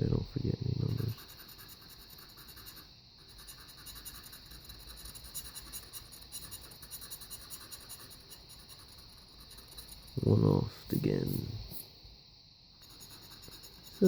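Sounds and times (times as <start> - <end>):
knife scraping scratch-off ticket: 1.0 - 10.2, 12.8 - 14.0.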